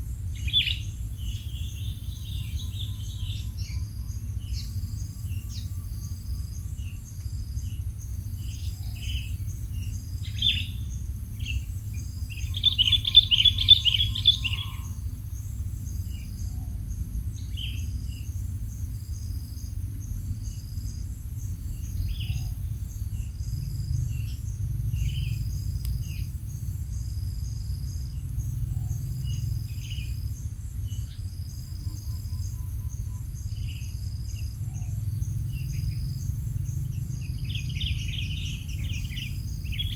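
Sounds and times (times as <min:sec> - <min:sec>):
high insect trill: 0:00.0 - 0:39.9
quail chirping: 0:00.4 - 0:04.7, 0:10.2 - 0:15.2, 0:37.4 - 0:39.9.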